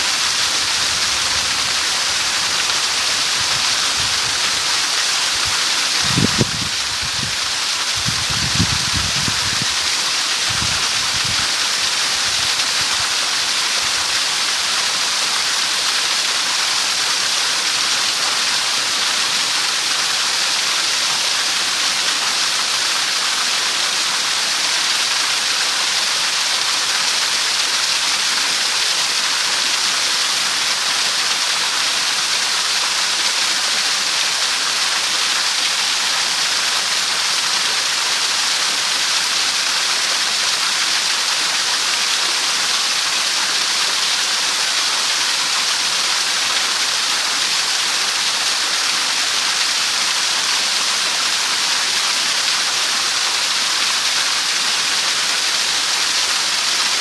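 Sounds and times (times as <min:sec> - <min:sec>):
steady rushing hiss: 0:00.0 - 0:20.6.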